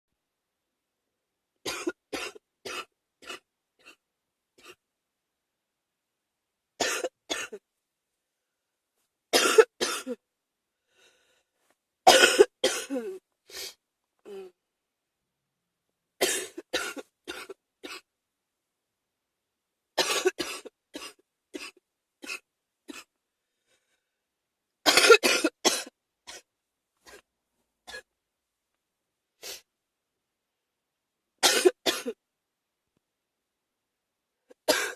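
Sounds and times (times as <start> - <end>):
person coughing: 1.7 - 4.0, 6.8 - 7.6, 9.4 - 10.2, 12.1 - 13.2, 16.2 - 18.1, 20.0 - 23.1, 24.9 - 26.5, 31.4 - 32.2, 34.5 - 34.9.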